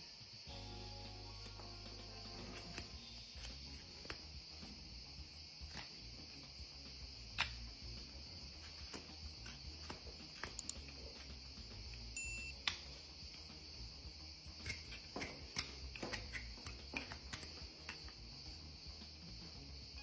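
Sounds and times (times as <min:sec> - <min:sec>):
steady high hiss: 0:00.0 - 0:20.0
farrier tools clicking on hoof: 0:07.3 - 0:13.6, 0:14.4 - 0:19.0.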